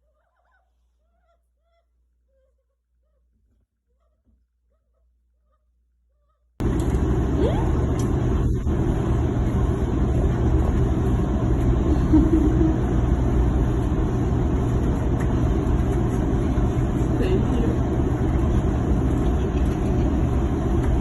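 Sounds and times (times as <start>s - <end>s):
washing machine running: 6.6s - 21.0s.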